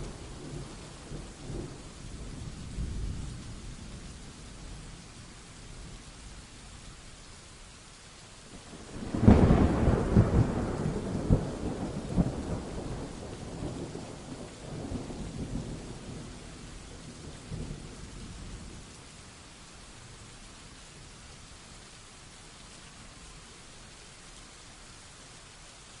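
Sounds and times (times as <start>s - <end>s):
heavy rain: 0.0s - 26.0s
thunderclap rumbling: 8.7s - 16.4s.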